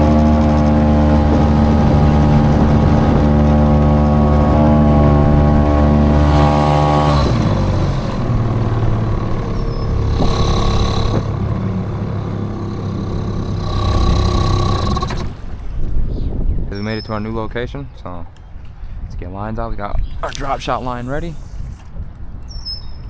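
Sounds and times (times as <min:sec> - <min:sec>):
outboard motor running: 0:00.0 - 0:15.7.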